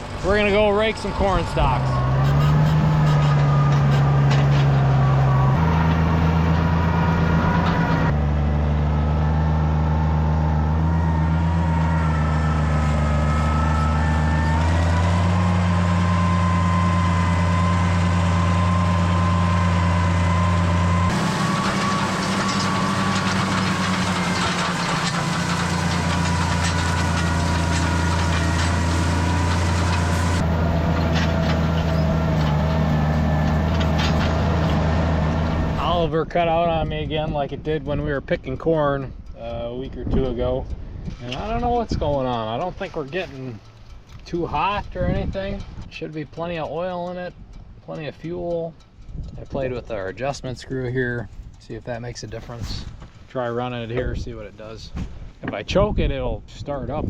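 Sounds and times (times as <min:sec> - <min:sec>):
tractor engine running: 0:00.0 - 0:56.1.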